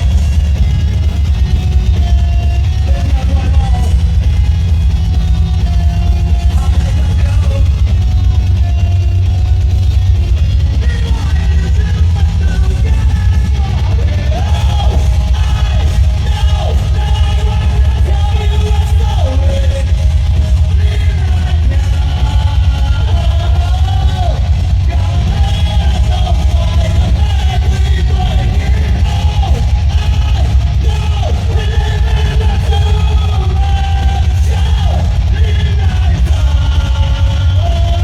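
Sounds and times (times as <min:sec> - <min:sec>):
heavy bass: 0:00.0 - 0:38.0
live rock band playing: 0:00.0 - 0:38.0
person singing: 0:10.6 - 0:38.0.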